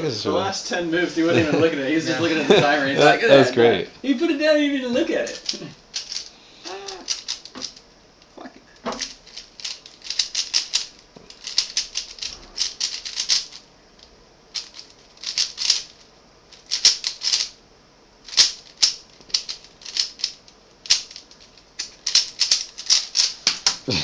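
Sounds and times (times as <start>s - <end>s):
puzzle cube clicks and rattles: 5.3s - 7.8s, 8.9s - 17.6s, 18.2s - 23.8s.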